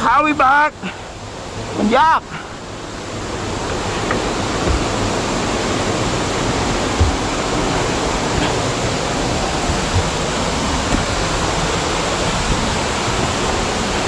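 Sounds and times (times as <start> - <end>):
waterfall pouring: 2.8 - 14.0
low thumps: 3.2 - 14.0.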